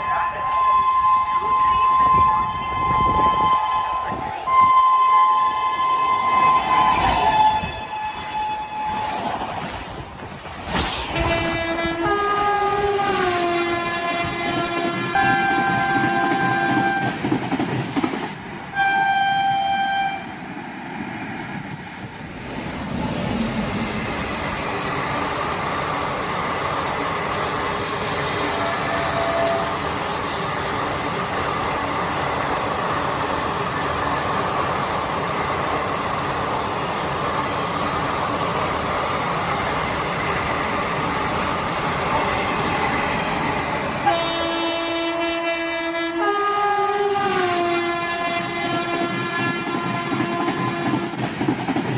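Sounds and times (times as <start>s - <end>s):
electric locomotive horn: 0.0s - 9.2s, 11.2s - 17.2s, 18.7s - 20.3s, 28.1s - 30.5s, 44.0s - 51.2s
train wheels rushing on rails: 0.8s - 51.9s.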